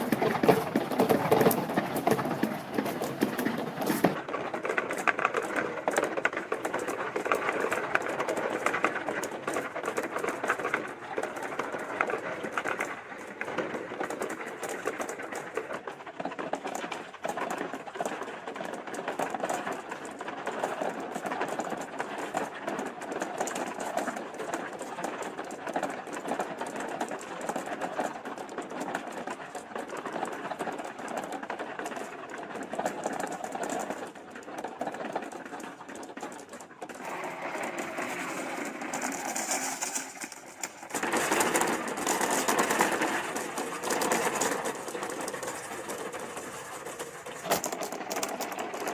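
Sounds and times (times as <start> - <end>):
marbles rattling down plastic track: 34.8 - 48.9.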